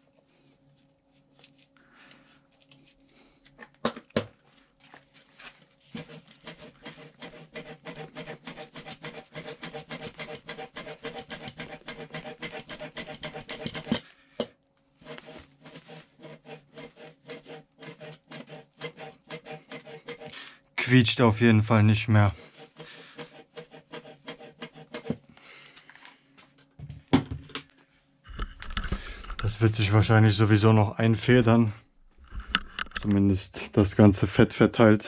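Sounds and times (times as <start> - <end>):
suspension seatpost pumping: 6.0 - 14.2.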